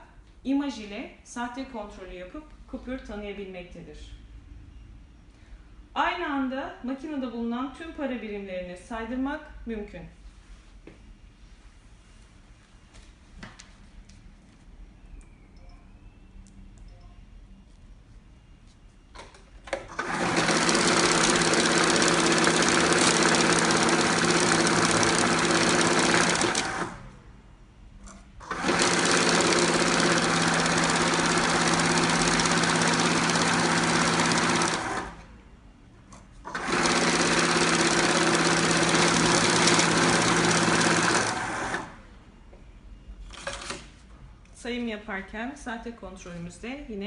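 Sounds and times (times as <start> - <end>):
banknote counter whirring: 19.8 - 27.0, 28.4 - 35.3, 36.5 - 42.0.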